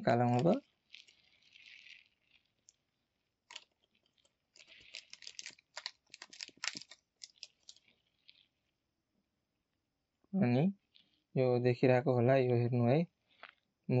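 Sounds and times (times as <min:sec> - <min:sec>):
plastic packaging crinkling and clicking: 0:00.0 - 0:08.6.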